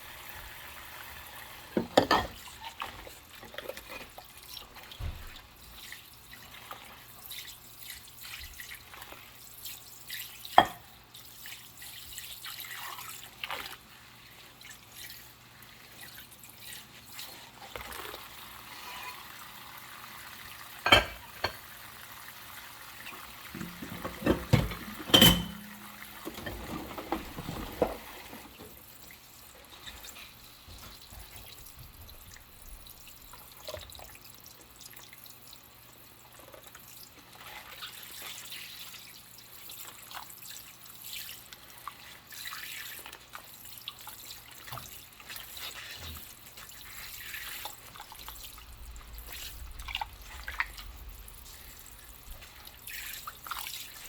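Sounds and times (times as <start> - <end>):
dishes clattering together: 1.8 - 2.4, 10.6 - 10.9, 20.8 - 21.6, 23.5 - 28.8
scrubbing dishes: 1.8 - 4.2, 20.9 - 21.6, 23.4 - 28.8
water running and dripping: 22.9 - 54.0.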